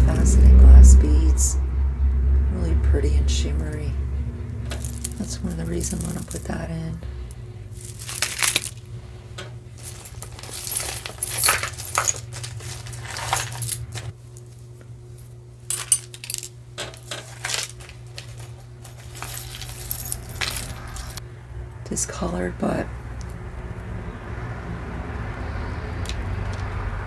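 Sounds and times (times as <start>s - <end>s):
steady low hum: 0.0s - 27.0s
jewelry and glass beads clinking: 4.6s - 6.6s, 7.7s - 8.8s, 9.8s - 14.1s, 15.7s - 21.2s.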